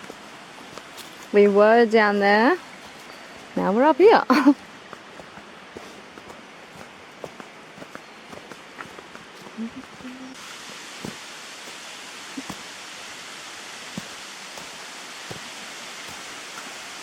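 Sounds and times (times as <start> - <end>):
waterfall rushing: 4.6 - 17.0.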